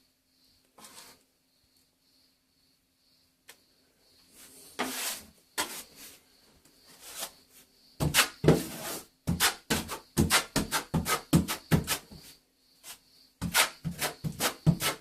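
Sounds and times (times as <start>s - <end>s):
scraping rubbing strokes: 4.4s - 6.2s, 6.9s - 15.0s.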